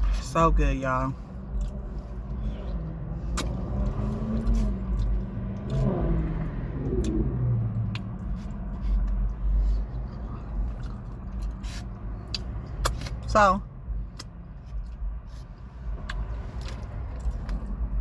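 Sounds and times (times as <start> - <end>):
car engine rumble: 0.0 - 18.0
person eating: 7.0 - 13.2.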